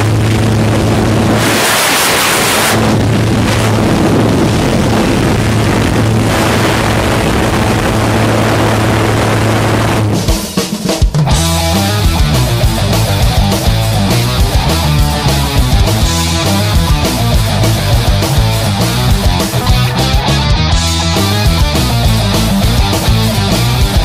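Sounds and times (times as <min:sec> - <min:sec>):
airplane engine and propeller droning: 0:00.0 - 0:10.4, 0:11.3 - 0:24.0
wind rushing: 0:00.0 - 0:10.4
rock music with drums: 0:00.0 - 0:24.0.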